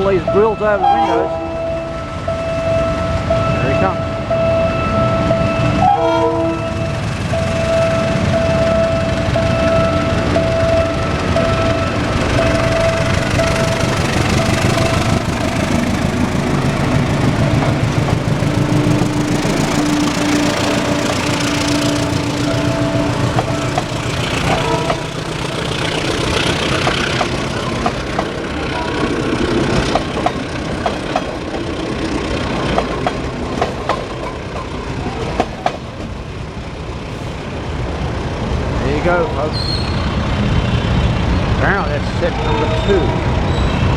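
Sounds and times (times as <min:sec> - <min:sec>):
diesel locomotive engine rumbling: 0:00.0 - 0:43.9
street traffic: 0:00.0 - 0:43.9
train wheels clicking over rails: 0:06.9 - 0:40.7.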